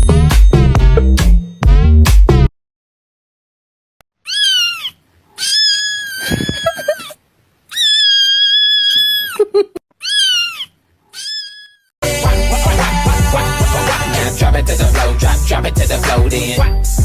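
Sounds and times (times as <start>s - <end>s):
cat meowing: 4.2s - 9.4s, 10.0s - 11.9s.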